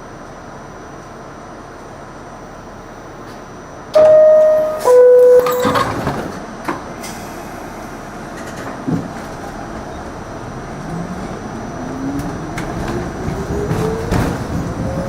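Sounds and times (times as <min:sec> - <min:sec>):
two-note door chime: 0:04.0 - 0:05.8
sliding doors shutting: 0:04.0 - 0:15.0.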